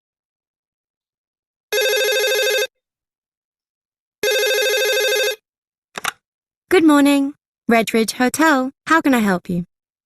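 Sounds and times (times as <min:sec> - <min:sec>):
telephone ringing: 0:01.7 - 0:02.8, 0:04.2 - 0:05.4.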